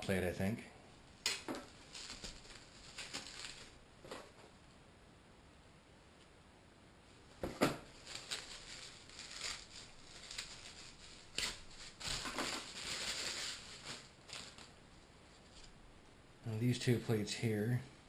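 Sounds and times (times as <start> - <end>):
scraping and rustling: 1.3 - 4.6, 7.4 - 15.8.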